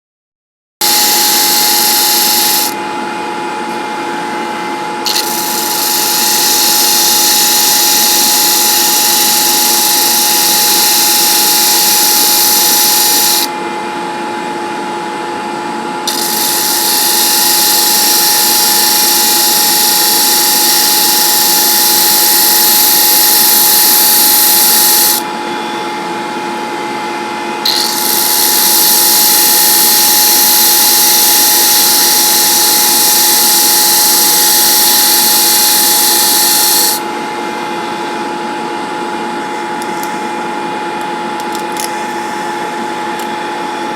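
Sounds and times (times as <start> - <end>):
power tool motor whine: 0.8 - 2.8, 5.0 - 13.5, 16.0 - 25.3, 27.6 - 37.1
loud high hiss: 16.1 - 25.2, 27.7 - 37.0.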